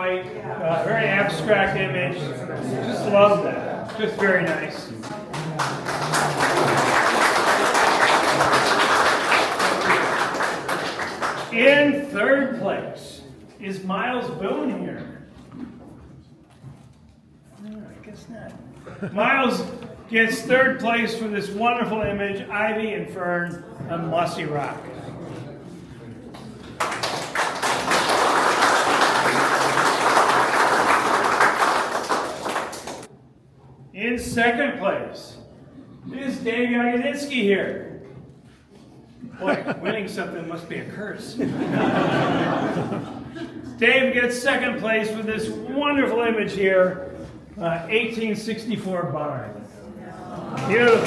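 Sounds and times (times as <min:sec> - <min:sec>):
audience applauding: 0:03.8 - 0:11.7, 0:26.6 - 0:33.1, 0:50.5 - 0:51.0.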